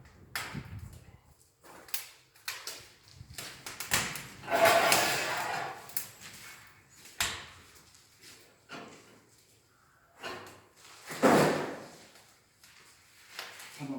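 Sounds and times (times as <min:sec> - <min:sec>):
wood fire crackling and popping: 0:00.0 - 0:08.6.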